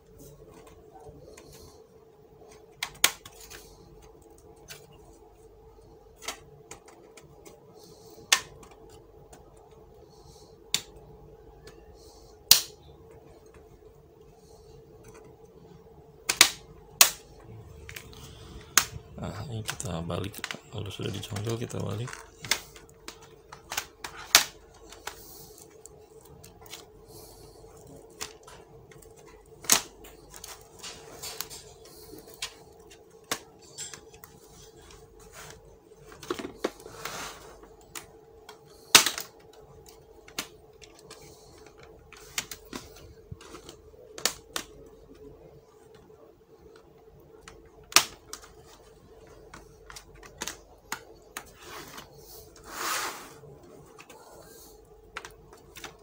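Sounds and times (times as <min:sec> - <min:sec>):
faint steady hum: 0:00.0 - 0:56.0
plastic clips snapping: 0:16.3 - 0:19.0, 0:29.6 - 0:30.6, 0:46.8 - 0:48.5.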